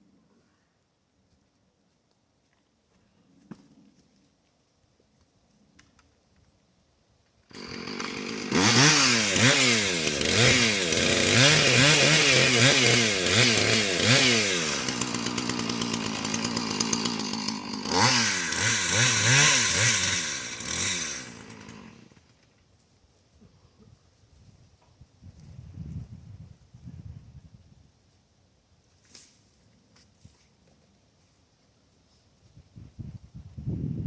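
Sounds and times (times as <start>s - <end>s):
chainsaw revving: 7.5s - 22.3s.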